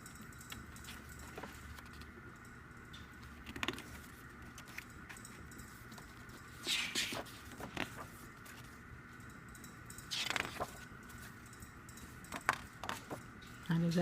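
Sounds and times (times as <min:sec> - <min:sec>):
paper pages swishing: 0:06.5 - 0:08.8, 0:10.1 - 0:11.2.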